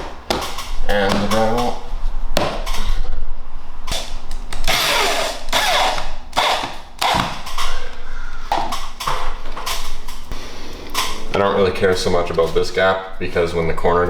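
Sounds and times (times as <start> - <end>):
power drill driving screws: 4.6 - 7.6.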